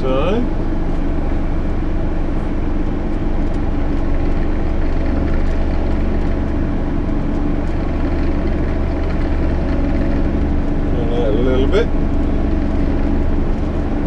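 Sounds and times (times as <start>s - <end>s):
tractor diesel engine under load: 0.0s - 14.0s.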